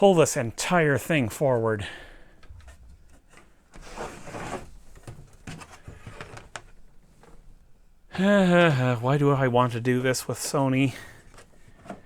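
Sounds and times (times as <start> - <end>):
hand rubbing scrape: 2.6 - 4.9.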